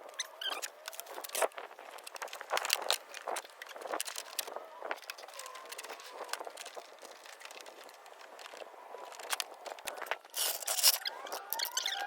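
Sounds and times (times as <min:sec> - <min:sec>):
crinkling handling noise with clicks: 0:00.0 - 0:12.0.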